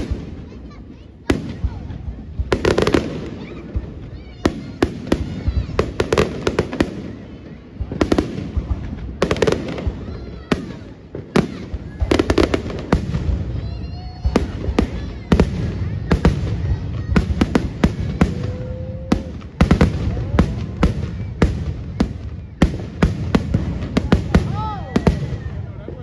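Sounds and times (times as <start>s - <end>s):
fireworks bangs and crackles: 0.0s - 26.0s.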